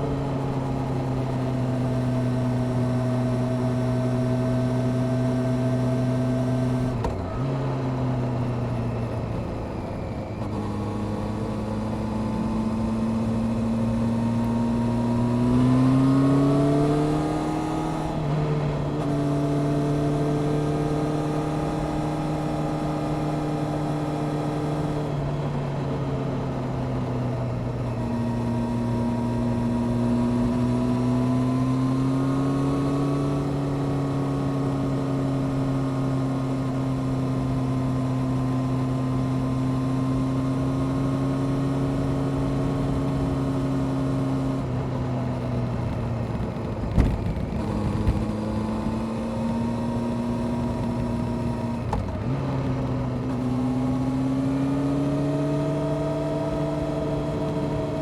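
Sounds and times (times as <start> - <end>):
motorcycle engine: 0.0 - 58.0.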